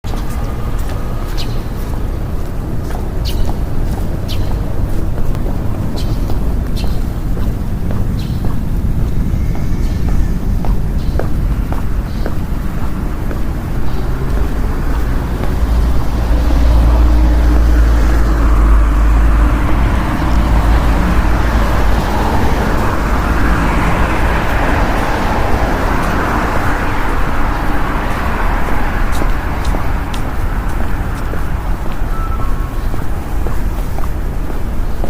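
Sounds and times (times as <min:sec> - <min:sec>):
engine rumble: 0:00.0 - 0:35.0
vehicles passing: 0:00.0 - 0:35.0.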